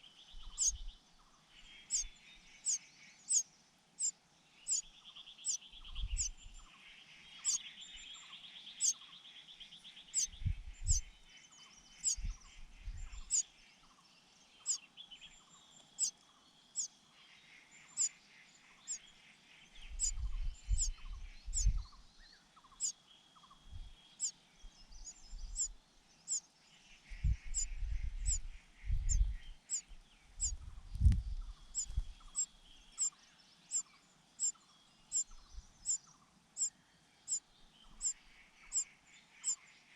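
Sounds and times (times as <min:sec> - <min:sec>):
nestlings cheeping: 0:00.6 - 0:00.8, 0:01.9 - 0:03.4, 0:10.1 - 0:11.0
raspy buzzing begging calls: 0:01.9 - 0:03.4, 0:38.0 - 0:39.6.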